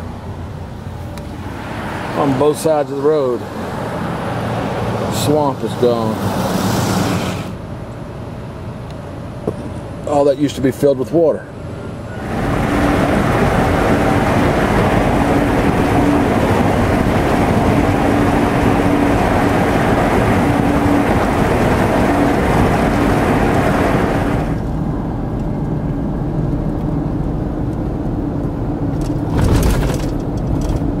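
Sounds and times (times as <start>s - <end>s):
vehicle road and engine noise: 0.0s - 31.0s.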